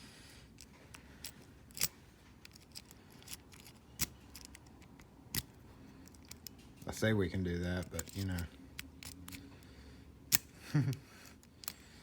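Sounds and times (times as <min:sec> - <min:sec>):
lock-picking tools clicking: 0:00.6 - 0:06.6, 0:07.8 - 0:09.5.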